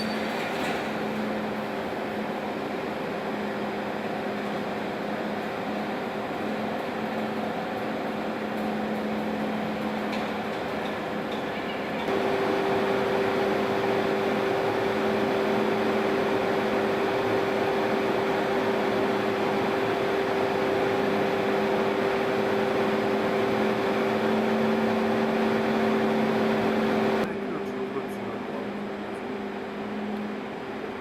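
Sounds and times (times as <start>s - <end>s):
machinery droning: 0.9s - 31.0s
steady machine tone: 12.1s - 27.7s.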